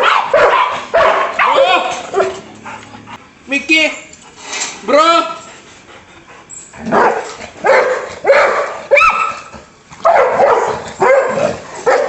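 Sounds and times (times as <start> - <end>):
dog barking: 0.0 - 2.4, 6.9 - 12.0.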